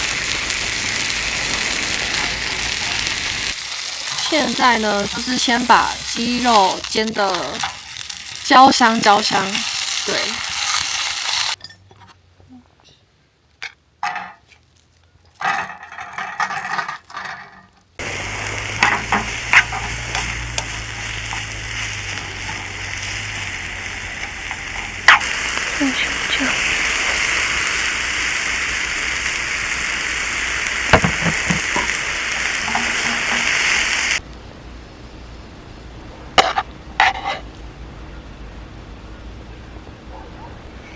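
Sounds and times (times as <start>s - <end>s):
meat sizzling in a frying pan: 0.0s - 11.6s, 18.0s - 34.2s.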